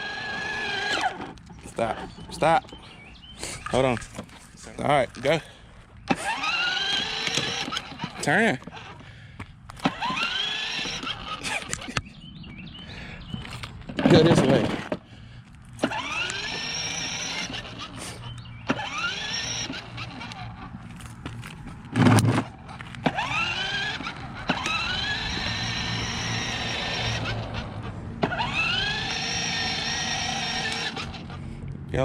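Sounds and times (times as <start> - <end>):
electric motor whining: 0.0 - 2.8, 6.1 - 9.1, 9.8 - 12.0, 15.8 - 31.4.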